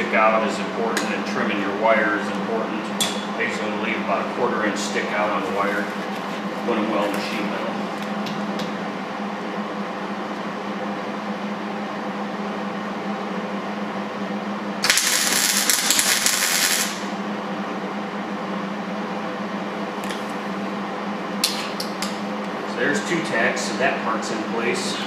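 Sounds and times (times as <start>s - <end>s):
crackling welding arc: 14.8s - 17.1s.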